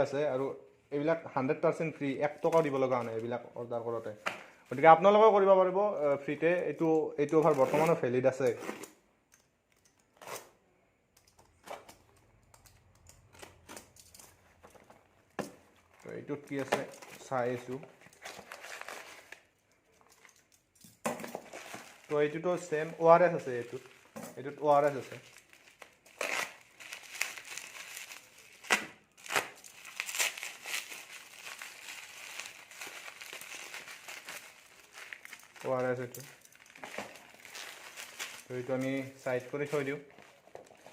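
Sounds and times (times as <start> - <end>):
plastic packaging rustling: 11.5 - 40.9.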